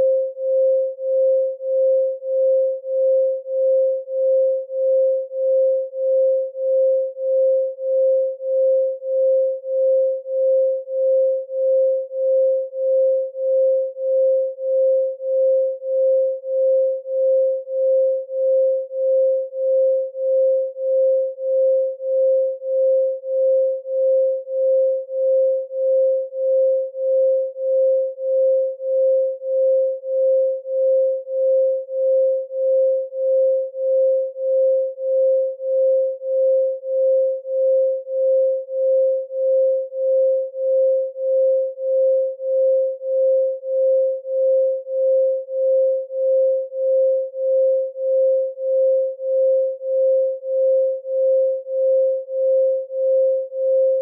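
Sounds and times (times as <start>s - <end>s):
pure sine tone: 0.0s - 54.0s.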